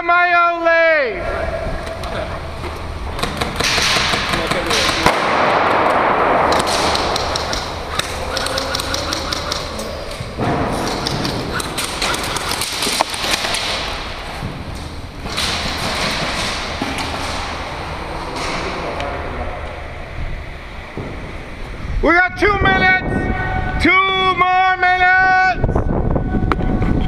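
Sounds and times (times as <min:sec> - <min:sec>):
steady rushing noise: 0:01.1 - 0:27.0
sharp clicks: 0:06.5 - 0:10.2, 0:10.8 - 0:13.8
thuds: 0:10.2 - 0:17.7, 0:20.9 - 0:21.4.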